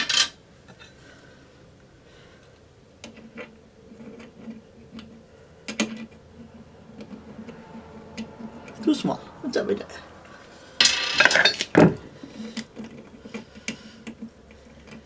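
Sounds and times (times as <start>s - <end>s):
fittings clattering: 10.8s - 15.0s.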